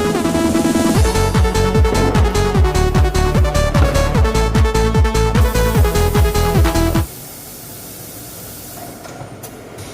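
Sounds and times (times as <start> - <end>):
electronic dance music: 0.0 - 7.1.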